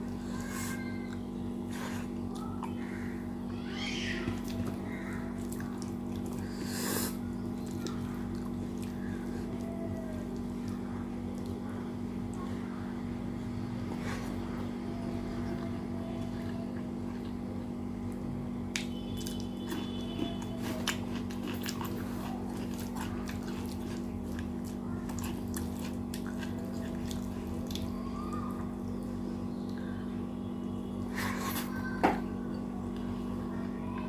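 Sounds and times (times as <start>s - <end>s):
steady low hum: 0.0s - 34.0s
wet chewing: 4.2s - 12.6s, 15.4s - 30.0s.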